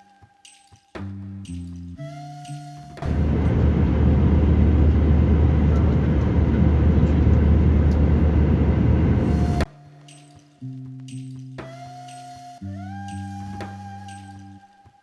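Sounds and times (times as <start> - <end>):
airliner jet roar: 3.0 - 9.6.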